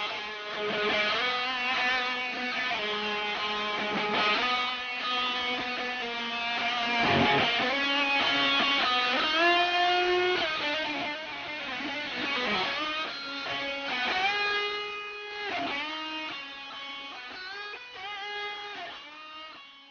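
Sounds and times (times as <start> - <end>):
electric guitar bending notes: 5.3 - 8.9.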